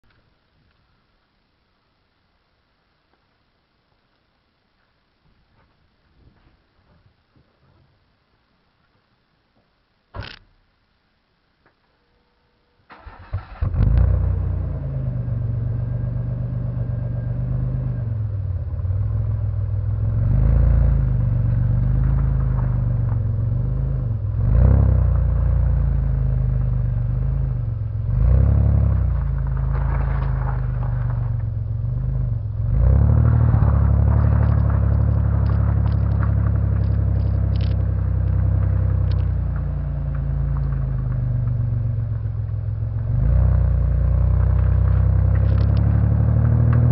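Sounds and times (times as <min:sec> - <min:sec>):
car engine starting: 0:12.9 - 0:46.9
car engine idling and revving: 0:13.0 - 0:46.9.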